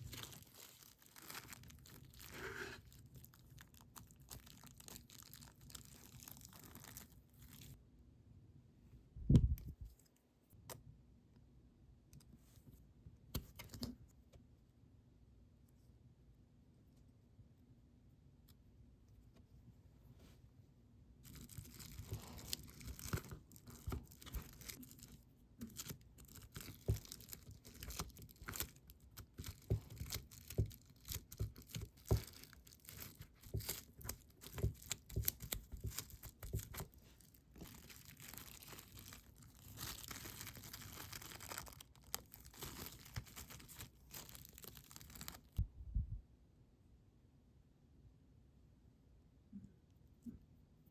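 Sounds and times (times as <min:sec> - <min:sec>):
crinkly rustling and tearing: 0:00.0 - 0:07.8, 0:21.2 - 0:45.6.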